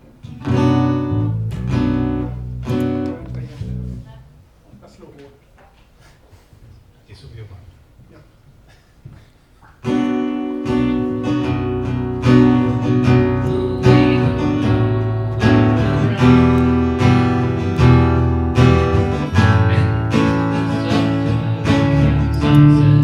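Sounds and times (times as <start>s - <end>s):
acoustic guitar strumming: 0.0s - 4.4s, 9.8s - 23.0s.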